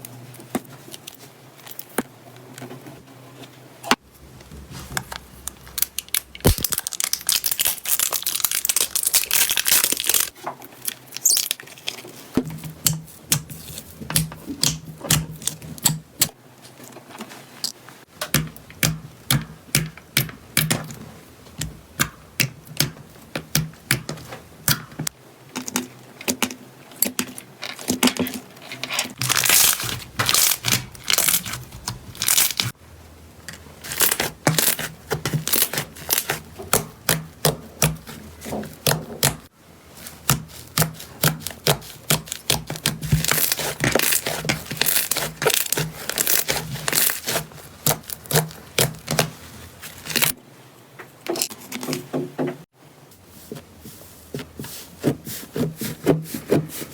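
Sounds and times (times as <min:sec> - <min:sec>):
slime crackling pops: 0:06.4 - 0:08.0.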